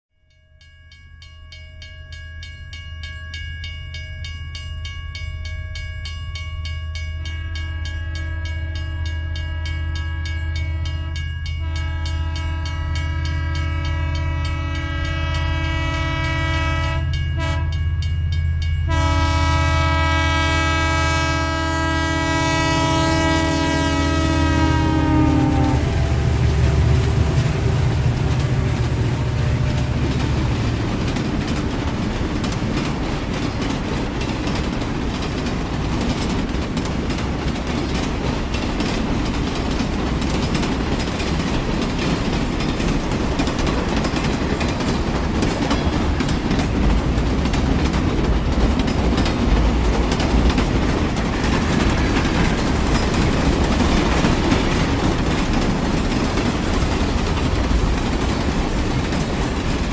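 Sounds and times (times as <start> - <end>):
heavy low train rumble: 1.9 - 59.9
train wheels clattering over rail joints: 24.9 - 59.9.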